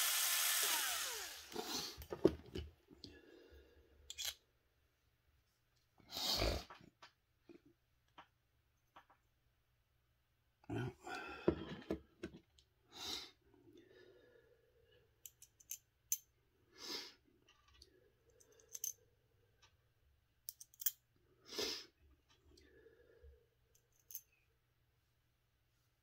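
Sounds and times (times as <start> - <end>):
small parts clicking: 15.2 - 16.2.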